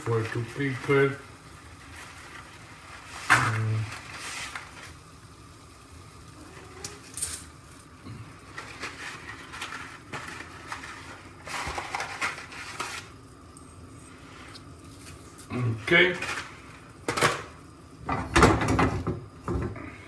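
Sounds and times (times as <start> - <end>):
pasta rustling: 0.0 - 5.5, 6.3 - 17.6
light kitchen clatter: 15.0 - 20.0.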